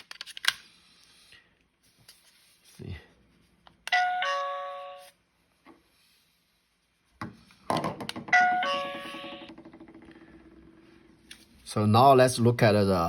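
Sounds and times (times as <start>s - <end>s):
electronic chime tones: 8.4s - 9.5s.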